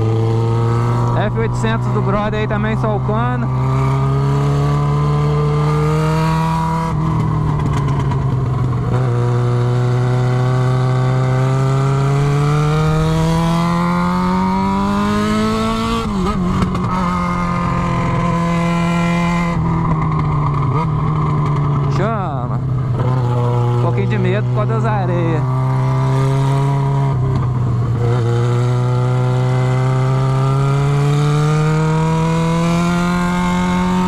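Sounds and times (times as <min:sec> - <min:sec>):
motorcycle engine pulling under load: 0:03.6 - 0:16.9.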